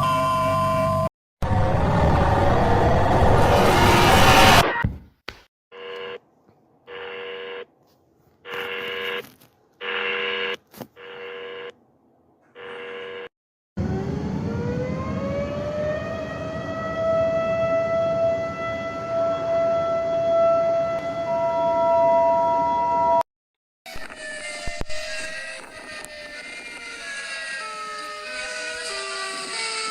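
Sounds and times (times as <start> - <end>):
siren wailing: 0.0 - 4.8, 13.8 - 23.2, 23.9 - 29.9.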